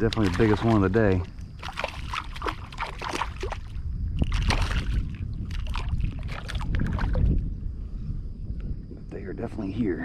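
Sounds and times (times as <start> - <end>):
shallow water sloshing and splashing: 0.0 - 7.5
steady low rumble: 0.0 - 10.0.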